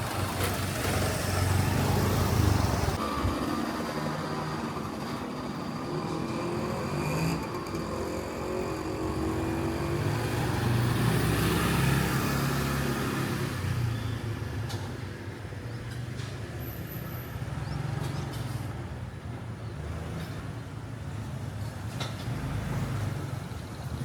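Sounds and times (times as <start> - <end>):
vehicle engine passing: 5.8 - 14.1.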